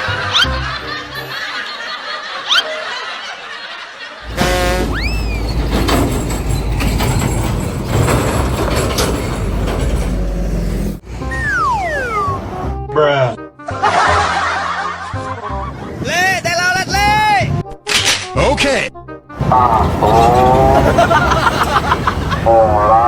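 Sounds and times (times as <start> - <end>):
light background music: 11.1 - 23.0
whistle-like glide: 11.2 - 12.6.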